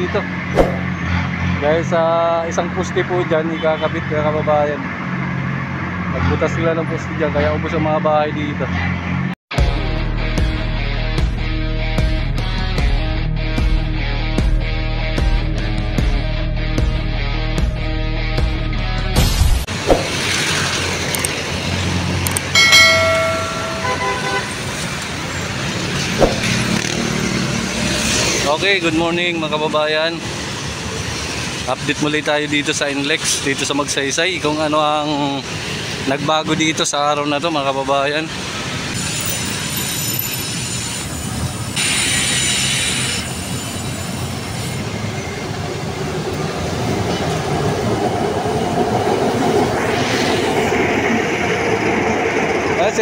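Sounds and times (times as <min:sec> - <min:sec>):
street traffic: 0:00.0 - 0:09.4, 0:17.4 - 0:53.0
train rumbling past: 0:19.8 - 0:27.2, 0:43.3 - 0:53.0
vehicle horn: 0:23.8 - 0:24.8.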